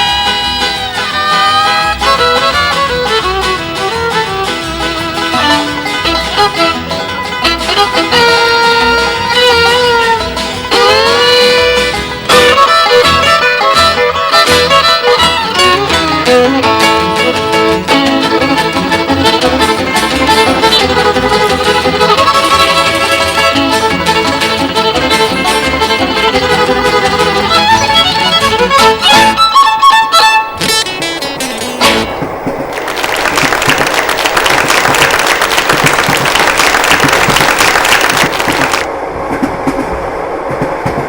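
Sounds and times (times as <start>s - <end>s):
double bass: 0.0s - 30.0s
banjo: 0.0s - 32.7s
guitars: 0.0s - 38.8s
fiddle playing fast runs: 0.0s - 38.9s.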